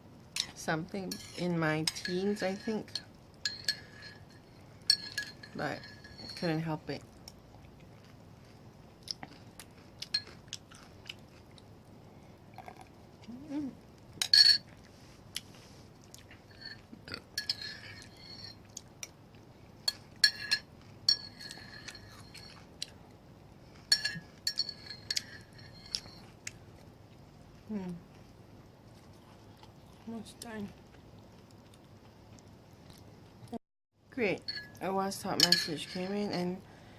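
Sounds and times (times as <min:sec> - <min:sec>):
chewing: 0:07.0 - 0:11.7, 0:23.7 - 0:33.5.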